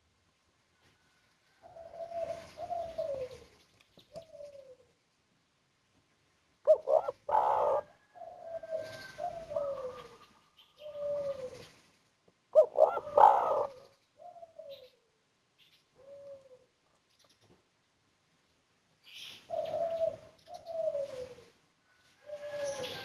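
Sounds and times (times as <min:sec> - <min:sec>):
dove cooing: 0:01.5 - 0:05.0, 0:06.6 - 0:11.8, 0:12.5 - 0:15.1, 0:16.0 - 0:16.8, 0:19.2 - 0:21.6, 0:22.2 - 0:23.0.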